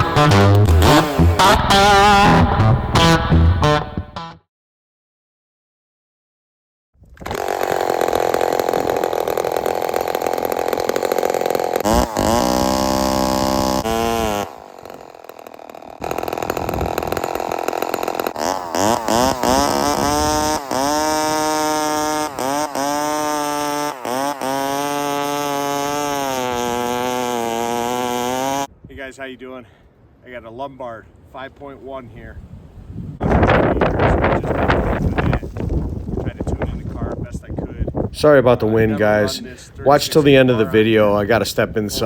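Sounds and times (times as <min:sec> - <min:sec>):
chainsaw revving: 0:00.0 - 0:03.8, 0:07.2 - 0:28.7.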